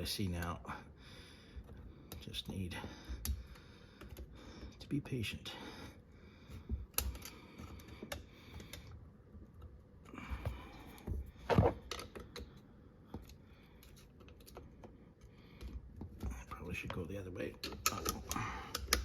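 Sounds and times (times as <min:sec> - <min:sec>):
tool clicking and tapping metal: 0:15.6 - 0:19.0.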